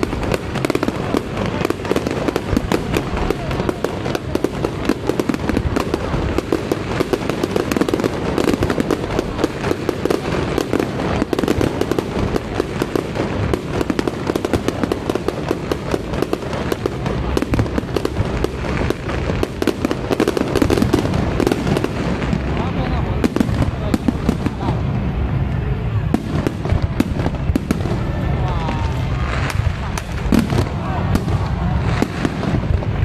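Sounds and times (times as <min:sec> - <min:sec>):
fireworks barrage: 0:00.0 - 0:33.0.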